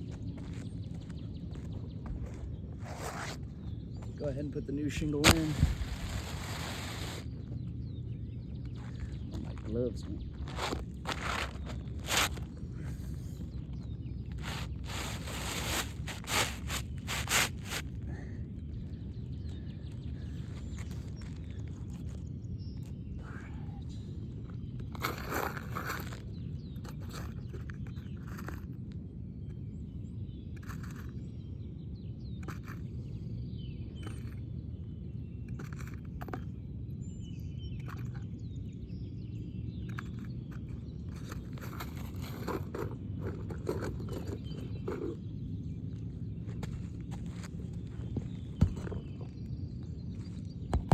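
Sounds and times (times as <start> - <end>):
scraping and rustling on shingle roof: 0.0 - 23.0, 23.8 - 28.9, 39.8 - 50.9
scraping on roof shingles: 5.1 - 7.3, 8.8 - 13.5, 14.3 - 17.9.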